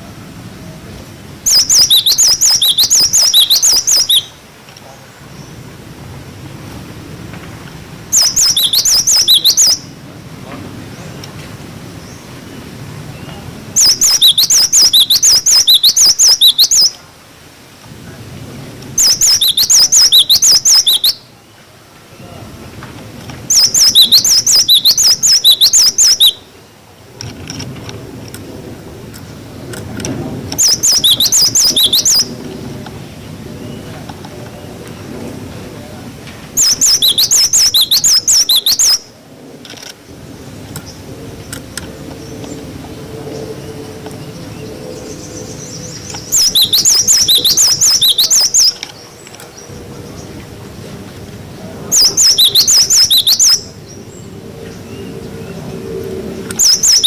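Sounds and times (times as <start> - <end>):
bird whistling high notes: 1.5 - 4.4, 8.2 - 9.9, 13.8 - 16.9, 19.0 - 21.2, 23.5 - 26.4, 30.6 - 32.3, 36.6 - 39.0, 46.3 - 48.8, 52.0 - 53.7, 56.6 - 57.0.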